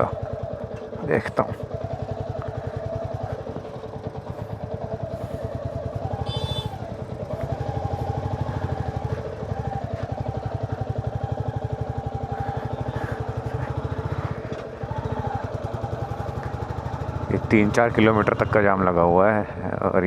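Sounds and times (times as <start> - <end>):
motorcycle engine running: 0.0 - 20.0
high-pitched vehicle horn: 6.2 - 7.0.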